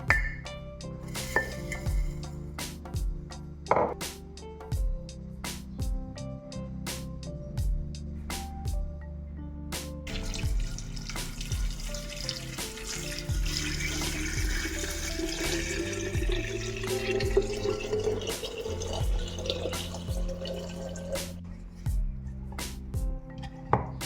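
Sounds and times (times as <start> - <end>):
music with steady beat: 0.0 - 9.0, 9.7 - 12.0, 12.6 - 23.3
liquid pouring into container: 10.1 - 21.4.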